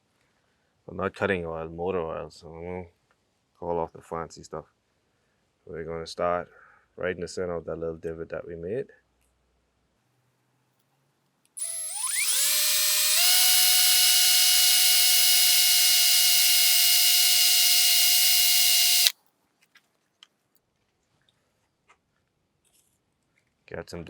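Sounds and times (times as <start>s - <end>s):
electric drill whining: 11.6s - 19.1s.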